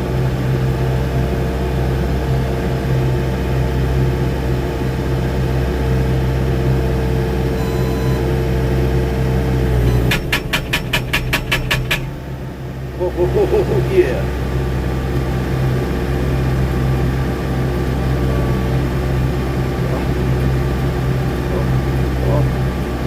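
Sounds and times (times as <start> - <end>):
diesel engine running: 0.0 - 23.0
hydraulic whine: 7.5 - 8.4, 9.5 - 12.8
hydraulic breaker hammer pounding: 9.9 - 12.4.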